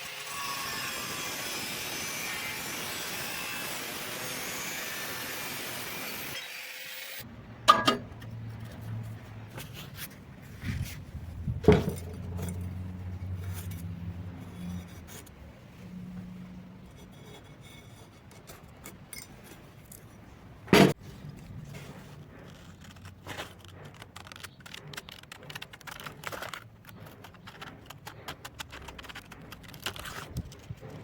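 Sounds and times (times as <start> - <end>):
metal cutting rasp: 11.8 - 15.4.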